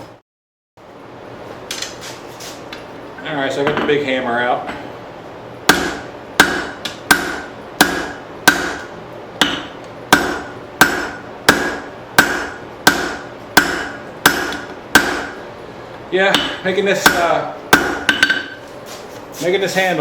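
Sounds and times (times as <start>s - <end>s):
hammer striking steel on anvil: 5.7s - 15.4s, 16.3s - 18.6s.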